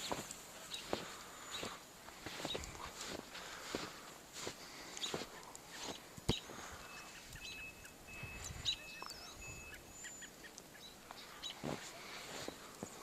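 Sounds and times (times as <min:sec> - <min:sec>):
footsteps in deep snow: 0:00.0 - 0:09.8, 0:11.0 - 0:13.0
bird chirps: 0:05.0 - 0:12.6.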